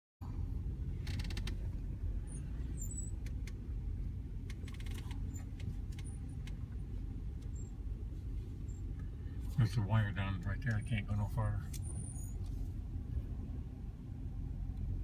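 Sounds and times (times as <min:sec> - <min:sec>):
car road and engine rumble: 0:00.2 - 0:15.0
light clicks and rattles: 0:01.0 - 0:01.8, 0:04.4 - 0:07.6.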